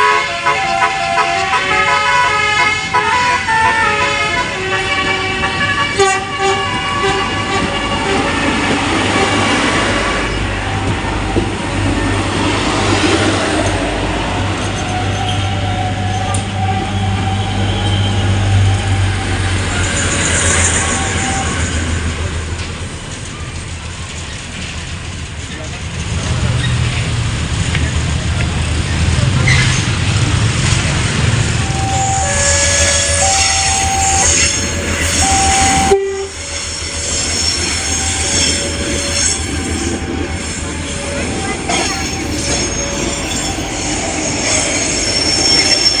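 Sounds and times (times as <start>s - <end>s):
train horn tune: 0.0s - 9.8s, 31.2s - 44.2s
train rail rumble: 0.0s - 46.0s.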